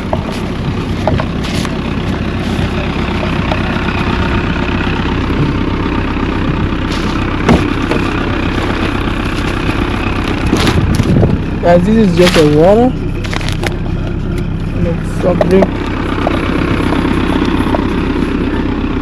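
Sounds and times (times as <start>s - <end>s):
vehicle engine idling: 0.0s - 19.0s.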